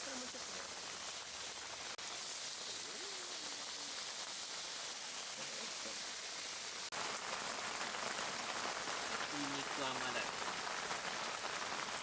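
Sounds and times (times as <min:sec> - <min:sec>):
steady hiss: 0:00.0 - 0:12.0.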